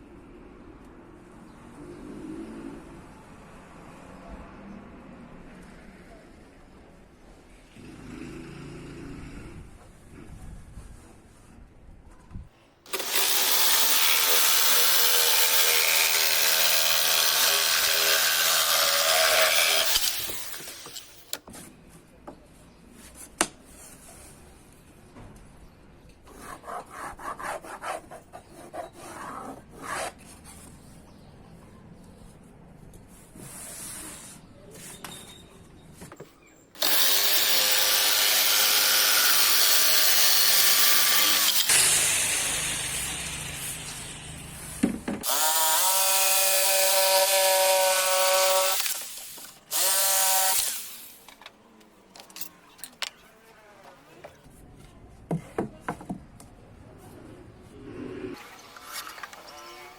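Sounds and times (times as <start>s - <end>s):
electric power tool working wood: 12.9s - 21.4s, 36.8s - 44.4s, 45.2s - 51.1s.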